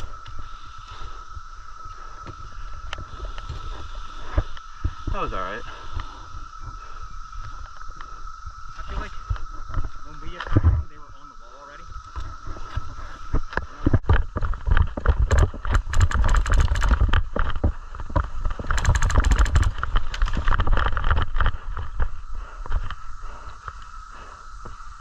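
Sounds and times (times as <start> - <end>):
rumbling thumps: 9.2 - 11.0
sharp clicks: 14.7 - 17.6, 18.5 - 21.4.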